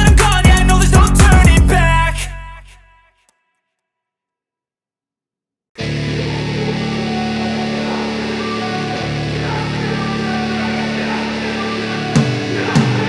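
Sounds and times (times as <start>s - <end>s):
guitar-led instrumental music: 5.8s - 13.0s.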